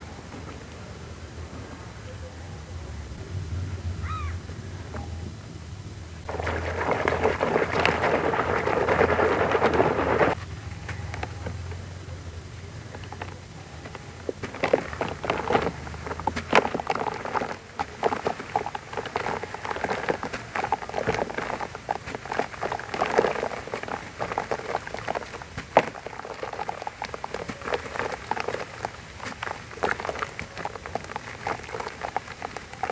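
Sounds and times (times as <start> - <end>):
wet crackles and crunches: 6.2 - 10.4, 12.9 - 32.9
sand fizzing in water: 6.3 - 10.4, 14.0 - 32.9.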